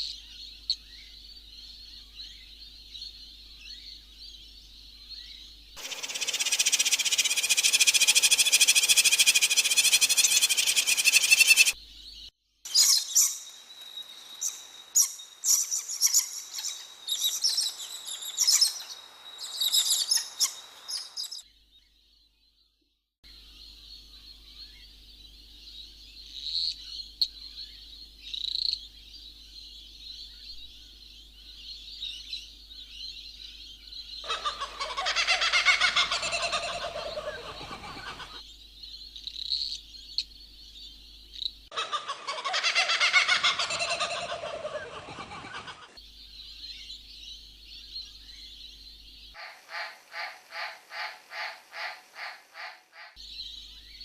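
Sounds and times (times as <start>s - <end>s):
small bird chirps: 5.1s - 21.5s, 23.3s - 54.0s
rapid pulsing bird call: 5.8s - 11.8s, 34.2s - 38.4s, 41.7s - 46.0s, 49.3s - 53.2s
birds calling: 5.8s - 13.5s, 32.2s - 54.0s.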